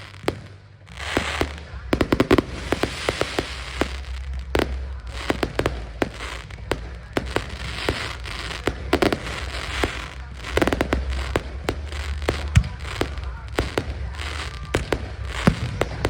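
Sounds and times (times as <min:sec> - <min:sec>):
fireworks bangs and crackles: 0:00.0 - 0:16.0
low rumble: 0:00.0 - 0:16.0.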